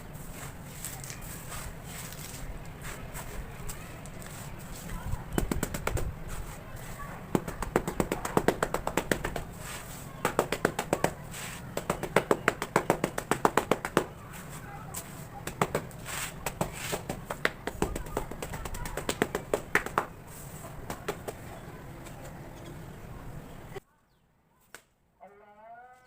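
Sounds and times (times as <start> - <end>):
fast sharp tapping on cement: 5.2 - 14.4, 15.0 - 20.2, 20.8 - 21.5.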